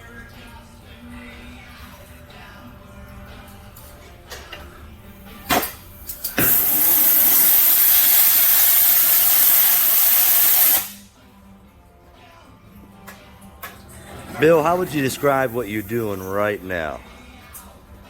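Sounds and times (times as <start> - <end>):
pressurized gas hissing: 5.6 - 11.1.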